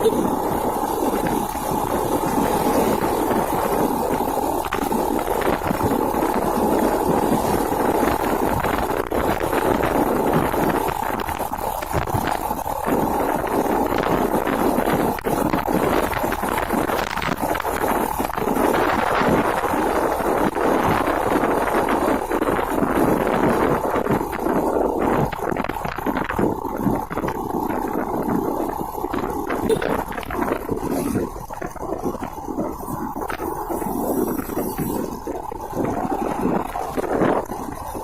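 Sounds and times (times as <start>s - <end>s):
motorcycle engine running: 0.0s - 38.0s
wind on microphone: 0.0s - 38.0s.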